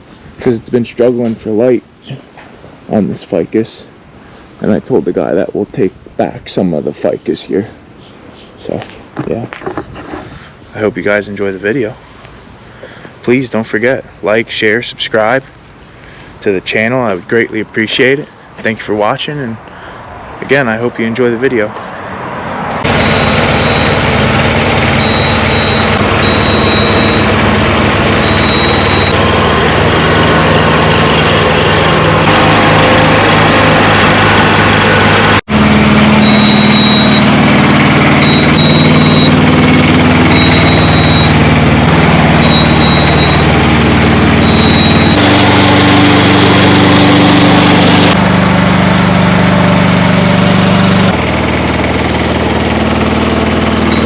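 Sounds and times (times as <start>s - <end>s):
engine running: 22.7s - 54.0s.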